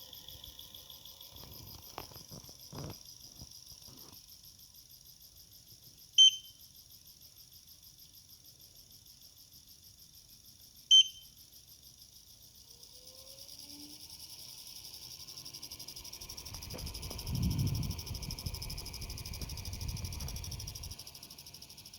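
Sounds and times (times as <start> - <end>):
short beeps: 6.2 - 6.6, 10.9 - 11.3
air purifier fan running: 13.2 - 21.9.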